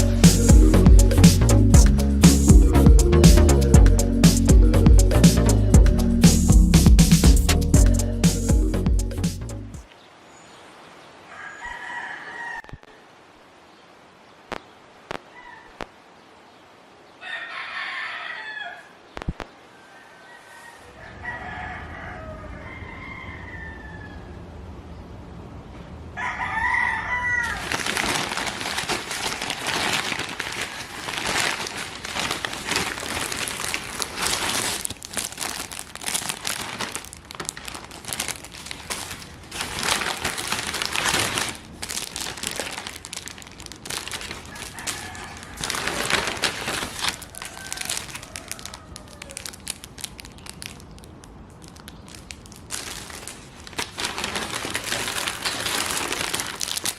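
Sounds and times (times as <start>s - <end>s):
rooster crowing: 11.3s - 13.0s, 17.2s - 19.0s, 19.7s - 24.4s, 26.2s - 27.7s, 44.4s - 49.6s
dense crackling with sharp snaps: 14.5s - 16.0s, 19.1s - 19.6s, 27.6s - 44.9s, 45.6s - 56.9s.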